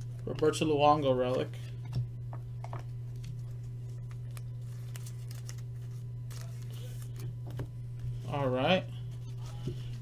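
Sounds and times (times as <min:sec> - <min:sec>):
trading cards and wrappers rustling: 0:03.1 - 0:07.3.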